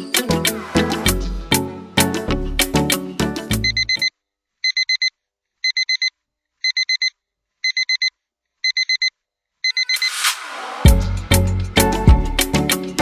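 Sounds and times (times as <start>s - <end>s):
background music: 0.0s - 4.0s, 10.0s - 13.0s.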